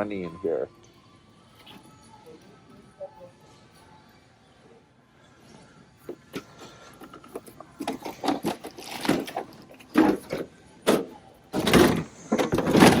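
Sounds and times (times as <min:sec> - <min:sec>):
cash register clicks and rattles: 0:06.1 - 0:13.0.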